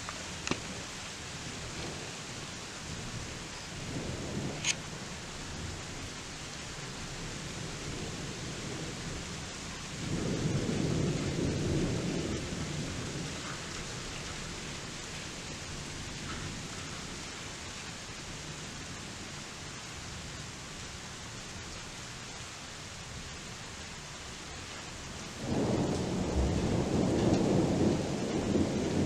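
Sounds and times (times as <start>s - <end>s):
steady rain: 0.0s - 29.0s
thunder rumbling: 10.0s - 14.8s, 25.2s - 29.0s.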